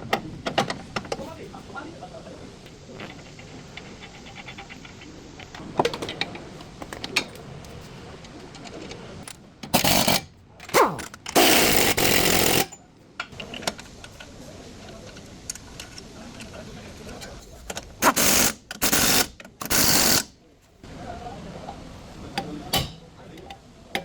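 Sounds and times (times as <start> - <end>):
power tool running in bursts: 11.0 - 12.7.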